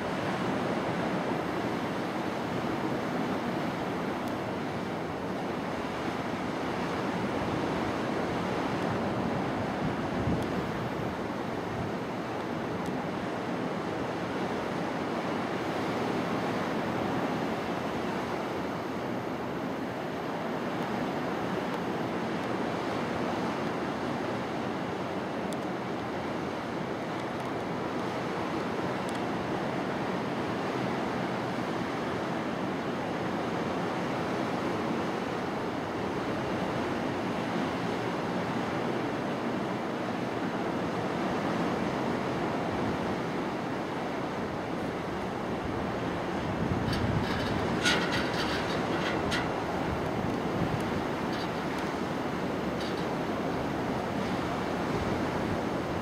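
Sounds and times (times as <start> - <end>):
surf rushing on beach: 0.0 - 56.0
wind on microphone: 44.3 - 56.0.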